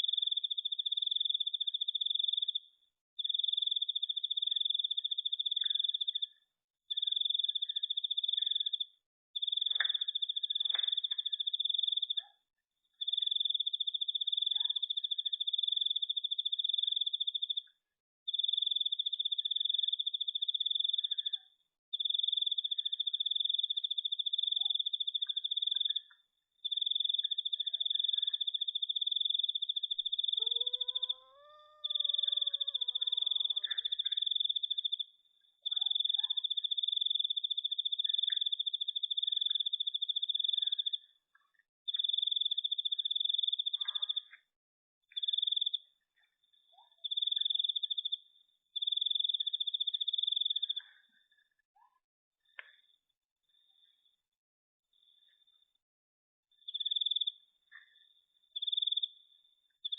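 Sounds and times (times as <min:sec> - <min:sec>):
insect trilling: 0:30.1 - 0:35.0.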